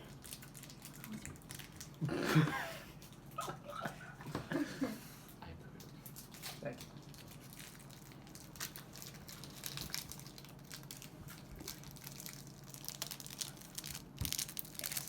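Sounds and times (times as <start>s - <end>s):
plastic wrapper crinkling: 0.0s - 2.1s, 5.8s - 15.0s.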